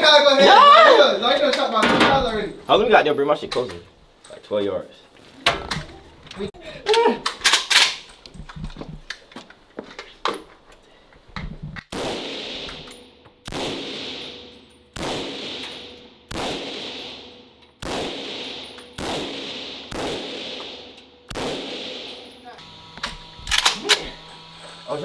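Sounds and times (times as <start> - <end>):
gunshots with ringing echo: 11.9 - 22.2.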